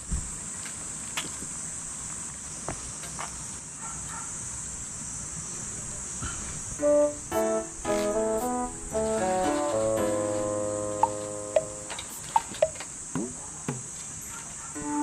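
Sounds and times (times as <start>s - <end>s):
insects droning: 0.0s - 15.0s
piano keyboard music: 6.8s - 12.8s, 14.8s - 15.0s.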